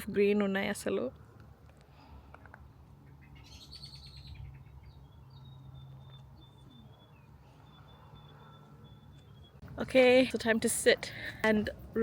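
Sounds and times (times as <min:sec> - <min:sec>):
birds chirping: 0:02.5 - 0:11.5.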